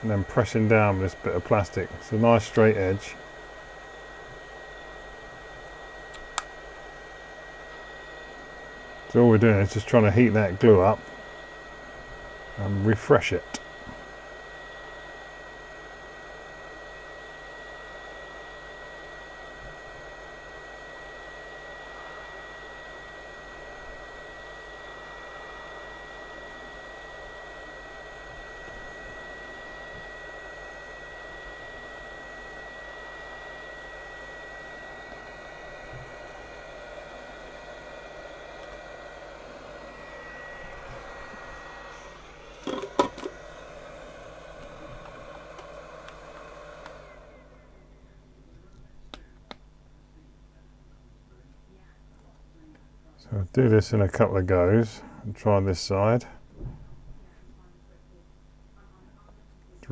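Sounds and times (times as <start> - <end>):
hot-air gun blowing: 0.0 - 47.6
high fan whine: 0.0 - 49.6.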